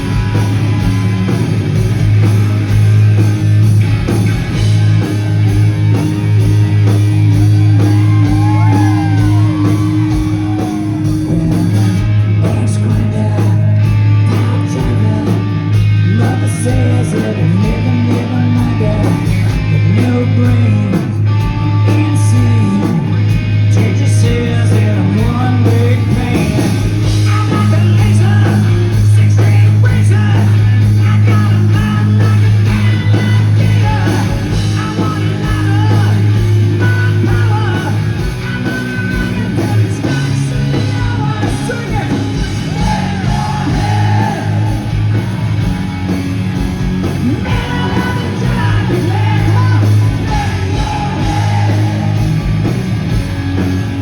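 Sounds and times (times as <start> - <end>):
hard rock music: 0.0 - 54.0
heavy bass: 0.0 - 54.0
person singing or shouting: 7.4 - 12.0, 27.3 - 45.2, 47.2 - 52.3.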